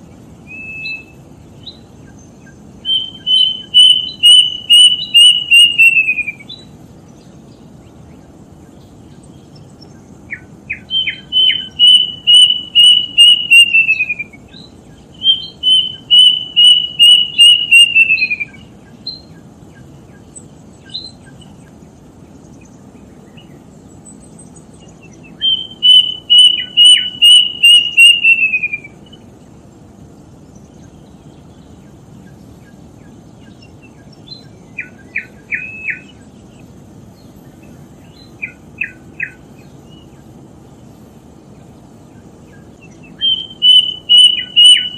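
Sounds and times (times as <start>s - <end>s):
bird whistling call: 0.4s - 6.7s, 10.3s - 21.5s, 24.8s - 29.2s, 33.4s - 36.4s, 38.0s - 40.2s, 42.5s - 44.9s.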